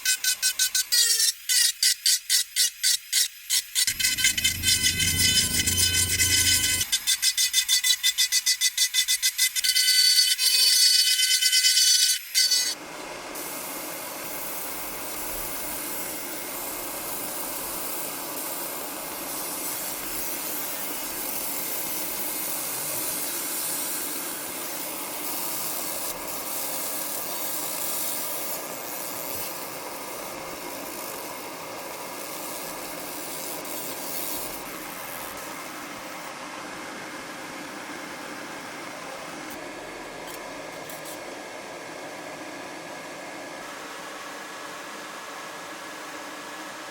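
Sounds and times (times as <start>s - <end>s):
laser engraver rasping hiss: 0.0s - 36.3s.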